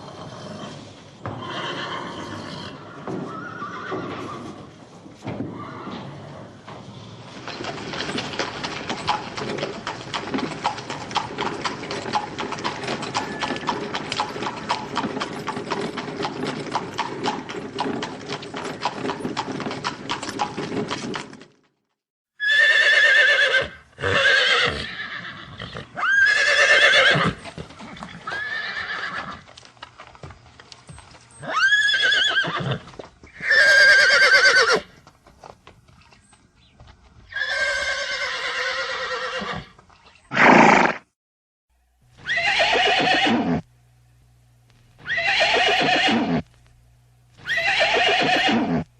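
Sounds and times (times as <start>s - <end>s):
horse whinnying: 1.4s - 4.6s, 5.5s - 6.4s, 13.0s - 14.0s, 22.4s - 29.4s, 31.4s - 34.9s, 37.3s - 41.0s, 42.2s - 43.6s, 45.0s - 46.4s, 47.4s - 48.9s
horse hooves clattering: 3.0s - 21.9s, 26.3s - 40.2s.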